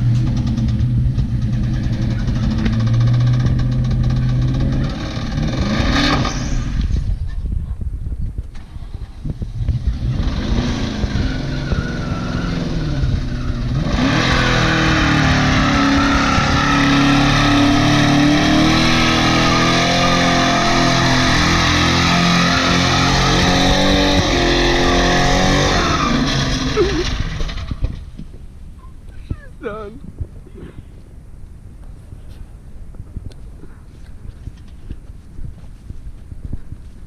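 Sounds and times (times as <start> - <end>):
engine revving hard: 0.0 - 6.9, 9.6 - 27.8
tyres spinning and squealing: 9.9 - 28.0.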